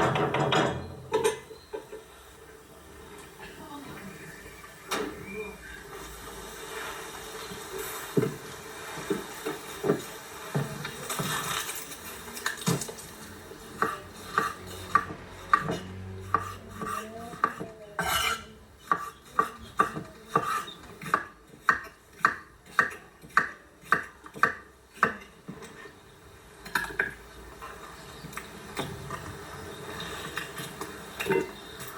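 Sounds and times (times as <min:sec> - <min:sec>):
cutlery clattering against dishes: 0:00.0 - 0:02.0, 0:30.0 - 0:31.9.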